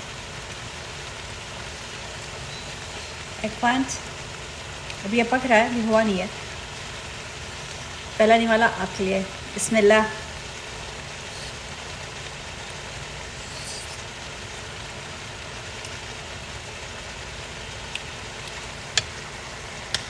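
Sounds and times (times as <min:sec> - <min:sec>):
kitchen hiss and hum: 0:00.0 - 0:20.0.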